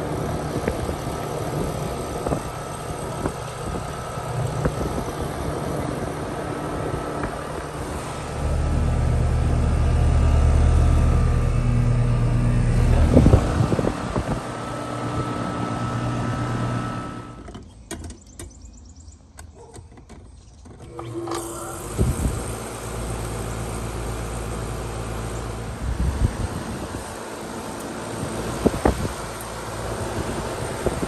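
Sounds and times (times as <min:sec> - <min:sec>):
air conditioner compressor hum: 0:00.0 - 0:17.5, 0:20.9 - 0:31.0
air conditioner starting with tone: 0:00.0 - 0:17.6, 0:20.8 - 0:31.0.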